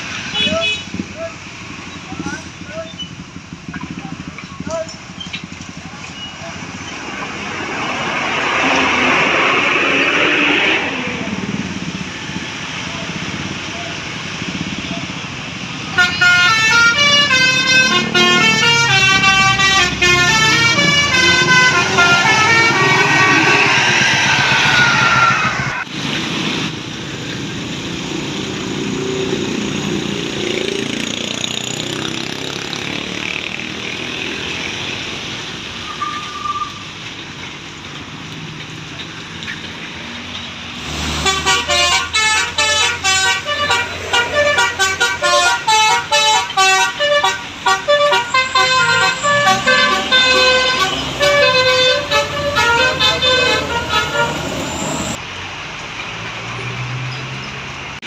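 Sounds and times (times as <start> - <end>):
bus engine: 0.0 - 58.0
road traffic: 0.0 - 58.0
musical bus air horn: 0.3 - 1.0, 15.9 - 25.9, 41.0 - 55.2.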